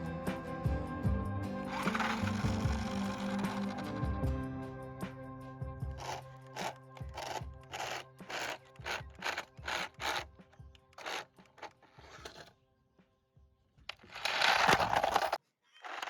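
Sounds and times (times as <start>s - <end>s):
background music held tones: 0.0s - 13.8s
raspy scraping beat: 1.7s - 4.2s, 6.0s - 12.5s.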